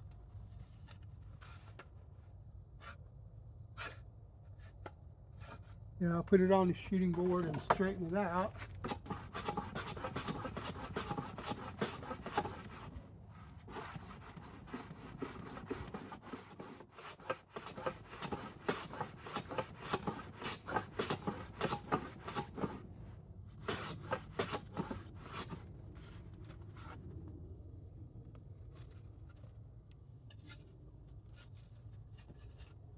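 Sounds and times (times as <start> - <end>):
hand plane scraping wood: 6.5 - 13.0, 13.6 - 22.8, 23.6 - 25.6.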